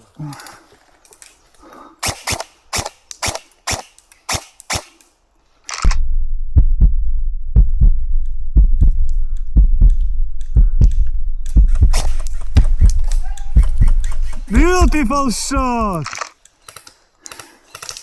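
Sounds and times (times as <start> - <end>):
airsoft rifle shots: 2.0 - 5.0, 11.9 - 13.6
loud low rumble: 5.9 - 12.0.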